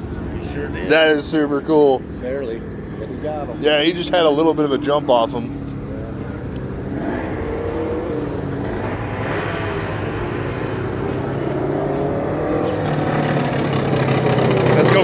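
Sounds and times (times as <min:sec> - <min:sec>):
racing lawn mower engines: 0:00.0 - 0:15.0.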